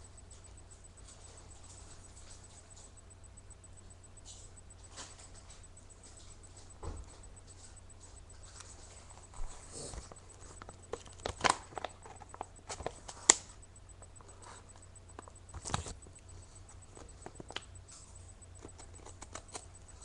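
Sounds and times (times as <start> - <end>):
packaging rustling: 9.4 - 13.4
packaging clicks: 10.6 - 13.5, 18.6 - 19.7.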